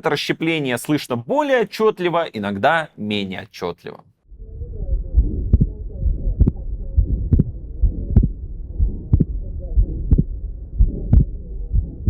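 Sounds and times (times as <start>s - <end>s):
heartbeat lub-dub: 4.3s - 12.0s.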